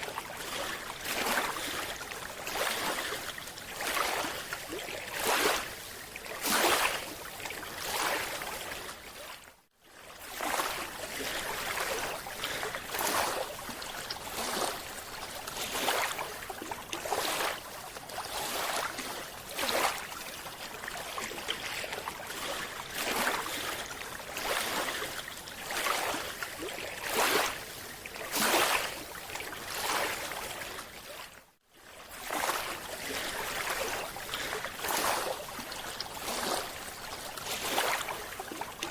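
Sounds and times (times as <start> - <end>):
water rushing in surges: 0.0 - 9.0, 32.0 - 38.9.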